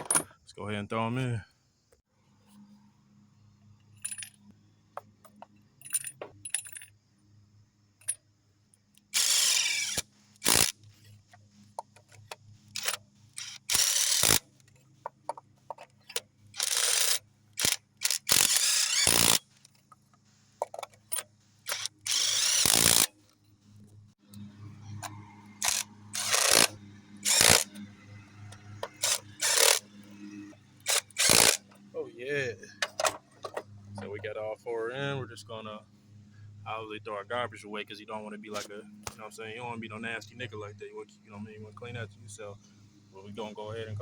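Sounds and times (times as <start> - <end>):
ratchet clicking: 9.0 - 10.8, 12.0 - 14.5, 16.0 - 19.7, 21.7 - 23.1, 25.6 - 27.8, 28.5 - 29.9, 30.8 - 31.8.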